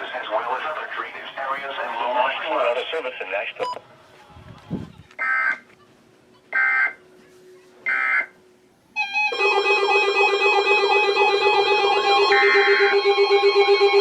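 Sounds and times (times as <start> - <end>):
warbling alarm tone: 9.0 - 14.0.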